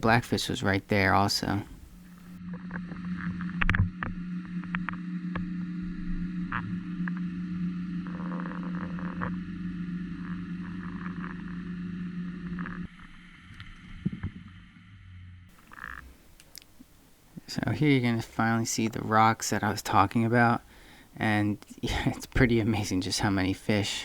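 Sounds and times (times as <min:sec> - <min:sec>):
muffled underwater hum: 0:01.7 - 0:16.2.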